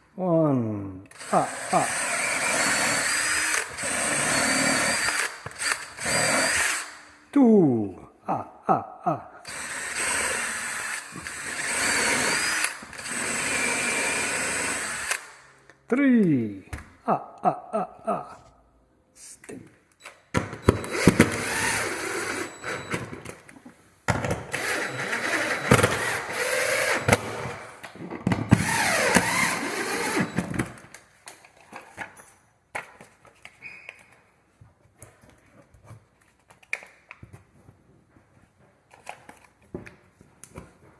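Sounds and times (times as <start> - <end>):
power drill running: 1.1 - 7.0, 9.4 - 15.4, 20.7 - 23.1, 24.5 - 27.7, 28.5 - 30.6.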